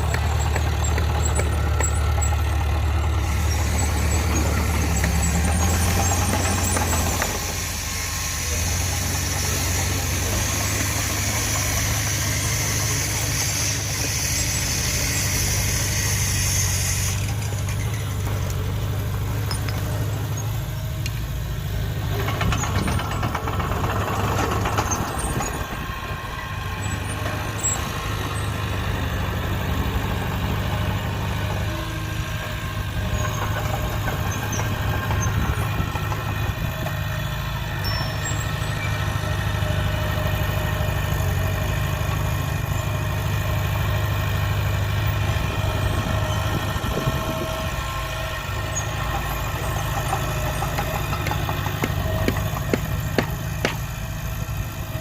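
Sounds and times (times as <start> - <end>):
rattling and clatter: 0.0 - 7.8, 17.1 - 21.1, 22.0 - 25.9, 49.0 - 53.9
diesel engine running: 0.0 - 55.0.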